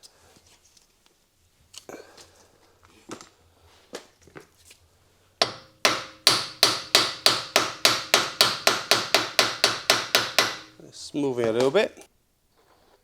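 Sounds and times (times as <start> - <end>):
hammer blows on metal: 5.4 - 10.8.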